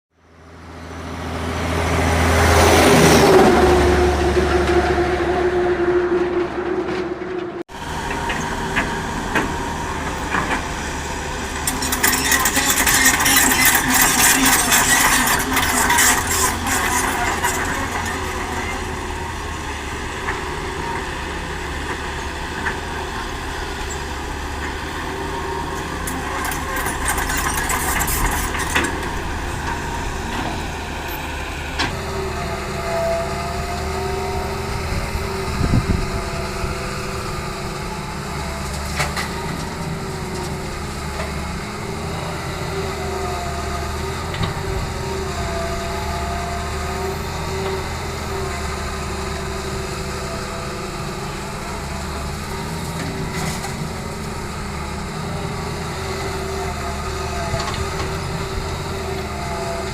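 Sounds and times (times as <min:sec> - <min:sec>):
diesel engines running: 0:00.2 - 0:59.9
loud clattering: 0:11.4 - 0:19.2.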